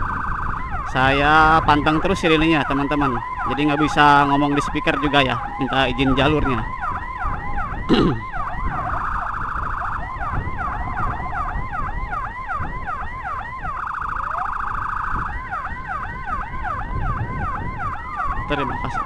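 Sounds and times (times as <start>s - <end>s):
motorcycle electronic siren: 0.0s - 19.0s
road and engine rumble: 0.0s - 19.0s.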